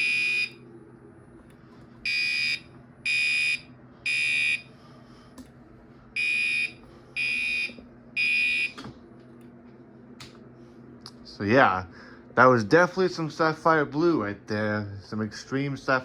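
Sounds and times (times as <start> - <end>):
fire alarm horn blasts: 0.0 - 0.6, 2.0 - 4.7, 6.2 - 8.8.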